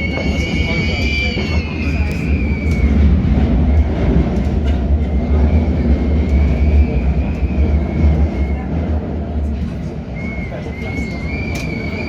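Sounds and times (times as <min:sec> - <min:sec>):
train interior low rumble: 0:00.0 - 0:12.0
high wavering whistle: 0:10.2 - 0:12.0.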